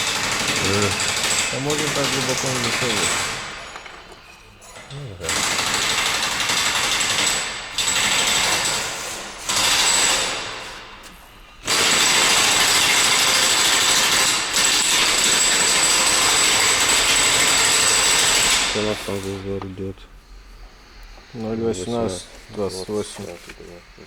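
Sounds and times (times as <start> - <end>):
power tool running: 0.0 - 4.4, 5.2 - 19.6.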